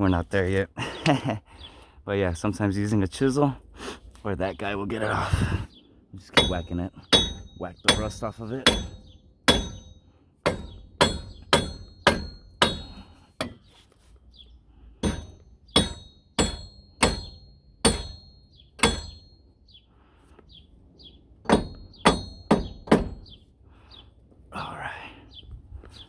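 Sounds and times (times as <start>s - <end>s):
sledgehammer striking metal hub: 6.4s - 13.7s, 15.0s - 19.4s, 21.4s - 23.4s.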